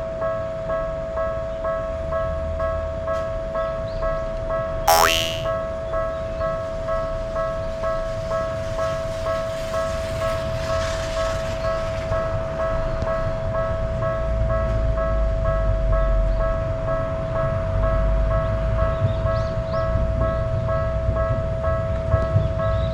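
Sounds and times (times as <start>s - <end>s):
steady tone: 4.9s - 5.5s.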